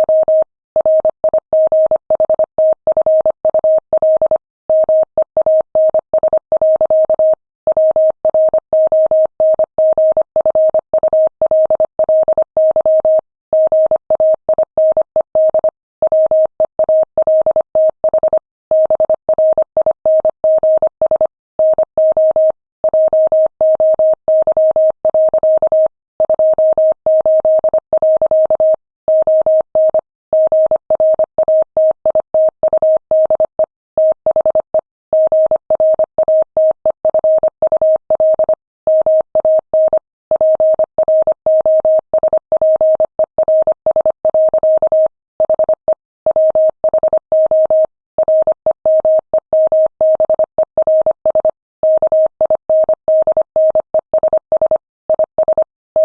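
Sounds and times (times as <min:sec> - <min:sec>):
morse code beeping tone: 0:27.6 - 0:56.0.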